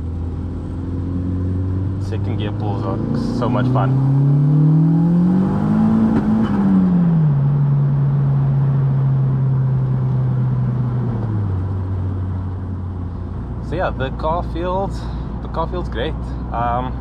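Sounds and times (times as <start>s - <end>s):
turbocharged car engine revving: 0.0s - 9.0s.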